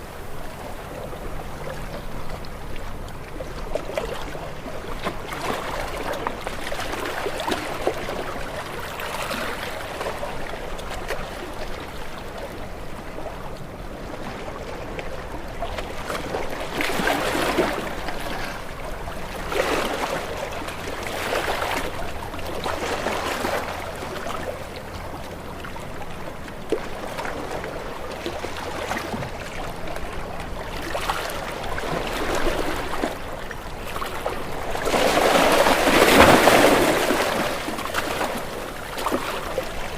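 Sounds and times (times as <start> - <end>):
waves breaking against rocks: 15.7 - 24.5, 26.6 - 39.9.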